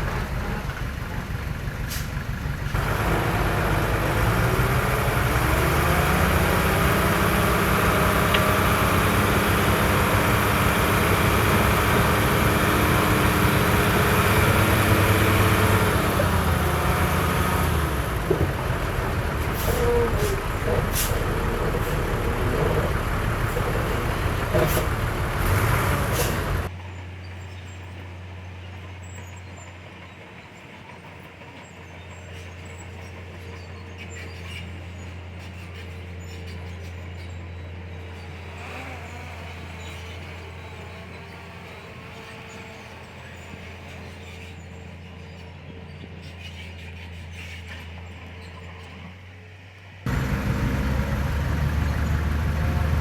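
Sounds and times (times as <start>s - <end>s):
heavy diesel machinery revving: 0.0s - 26.7s, 50.1s - 53.0s.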